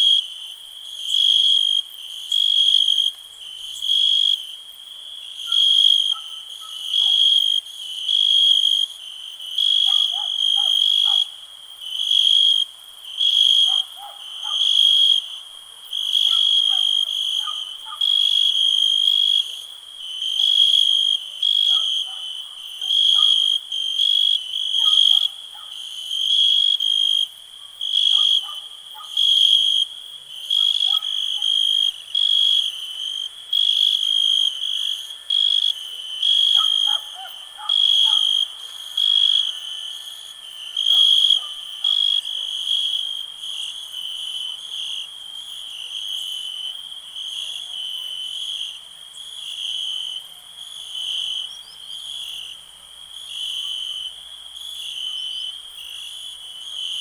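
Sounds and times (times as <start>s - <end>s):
crickets chirping: 0.0s - 57.0s
fainter lower-pitched insect calls: 22.7s - 43.1s.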